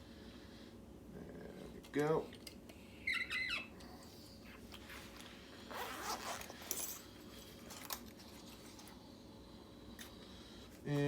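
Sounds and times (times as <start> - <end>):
short zipper-like rasp: 5.7 - 6.6.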